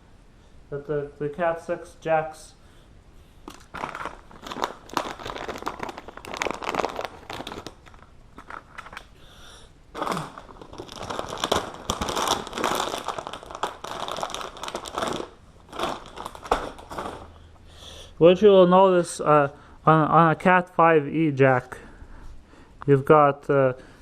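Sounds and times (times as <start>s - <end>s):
packaging crinkling and rustling: 3.5s - 9.2s, 9.9s - 17.4s.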